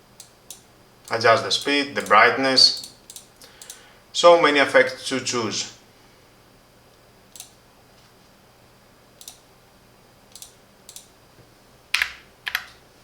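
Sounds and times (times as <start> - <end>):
computer mouse clicks: 2.8 - 3.8, 7.3 - 7.6, 9.2 - 9.4, 10.3 - 11.1.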